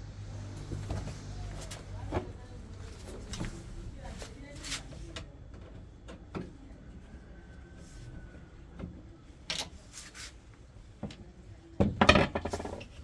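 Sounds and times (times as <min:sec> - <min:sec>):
clicks and knocks on metal cabinet: 0:11.8 - 0:12.9.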